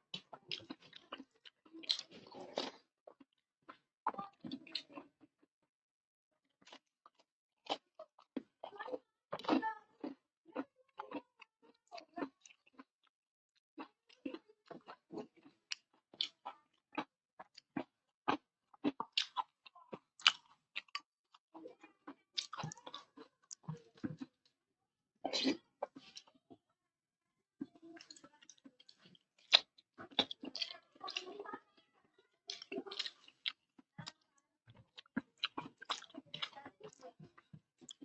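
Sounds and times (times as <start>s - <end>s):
close chewing with wet smacks: 0.1s - 3.4s, 13.8s - 24.5s, 28.0s - 31.7s, 32.4s - 38.0s
food crunching: 0.1s - 5.0s, 13.8s - 21.1s, 22.0s - 24.5s, 28.0s - 31.5s, 32.4s - 38.0s.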